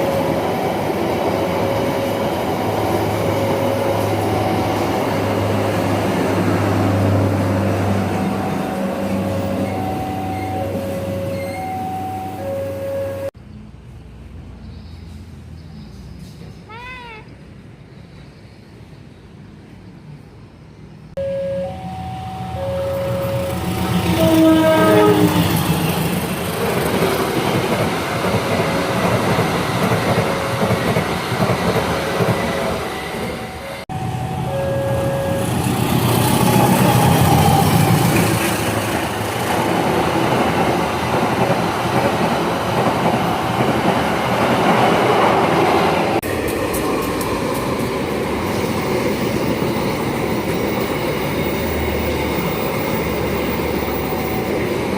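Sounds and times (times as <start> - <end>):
train horn: 21.2 - 25.7, 33.5 - 37.8
train wheels rumbling on track: 22.8 - 54.9.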